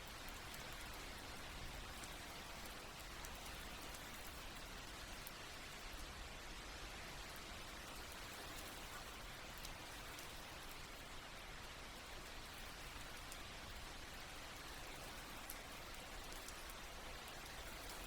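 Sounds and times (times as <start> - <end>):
soft rain falling: 0.0 - 18.0.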